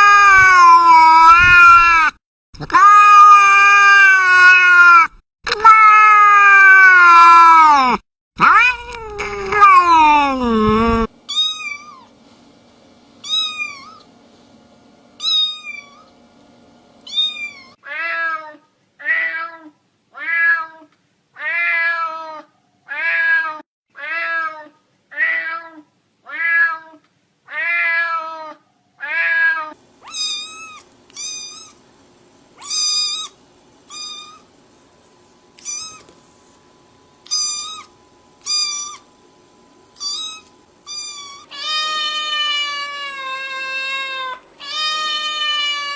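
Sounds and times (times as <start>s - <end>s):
cats meowing: 11.3s - 12.1s, 13.2s - 14.1s, 15.2s - 16.1s, 17.1s - 20.8s, 21.4s - 31.8s, 32.6s - 34.5s, 35.6s - 36.1s, 37.2s - 39.1s, 40.0s - 45.9s.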